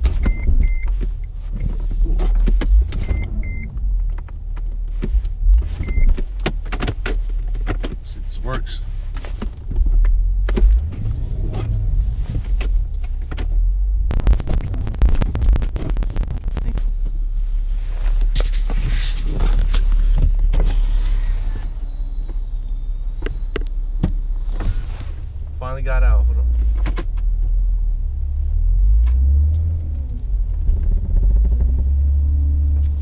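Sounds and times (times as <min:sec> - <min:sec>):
car engine revving: 0:00.0 - 0:33.0
crackling burst: 0:14.0 - 0:17.0.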